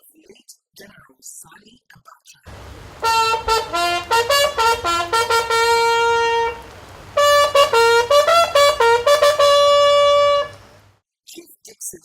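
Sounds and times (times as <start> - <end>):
solo trumpet bugle call: 2.5 - 10.8.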